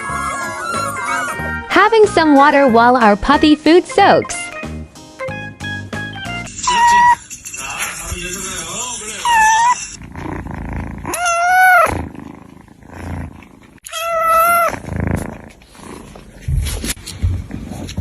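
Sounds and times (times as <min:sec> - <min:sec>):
cat meowing: 0:06.6 - 0:07.2, 0:11.1 - 0:12.0, 0:13.8 - 0:14.7.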